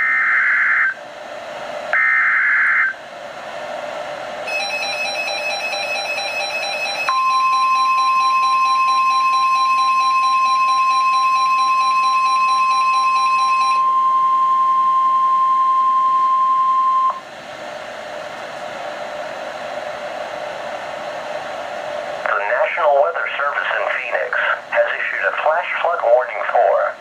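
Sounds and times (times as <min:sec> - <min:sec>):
steady loud warning alarm tone: 0:00.0 - 0:01.0, 0:02.0 - 0:03.0, 0:04.4 - 0:17.2
radio hiss: 0:22.0 - 0:27.0.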